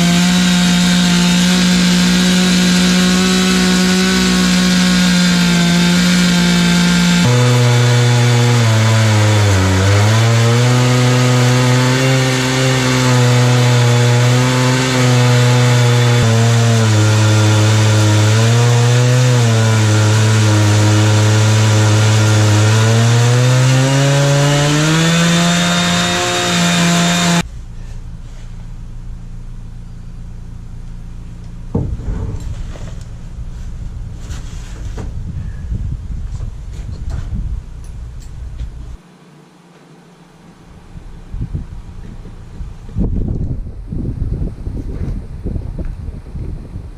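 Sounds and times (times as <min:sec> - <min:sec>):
chainsaw ripping through log: 0:00.0 - 0:27.5.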